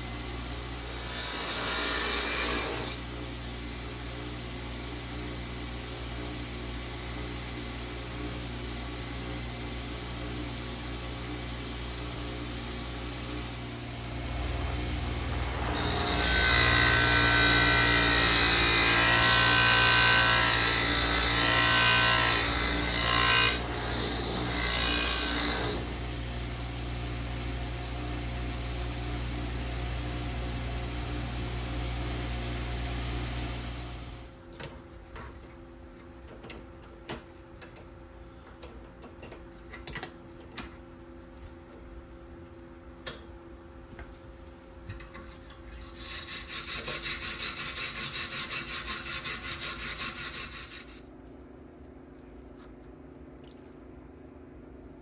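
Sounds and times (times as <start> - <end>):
power tool whining: 0.0 - 3.1, 12.7 - 34.3.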